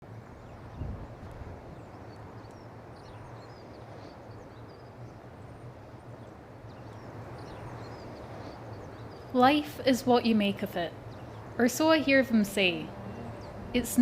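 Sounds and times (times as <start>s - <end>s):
small birds chirping: 0.0s - 14.0s
low hum and rumble: 7.4s - 14.0s.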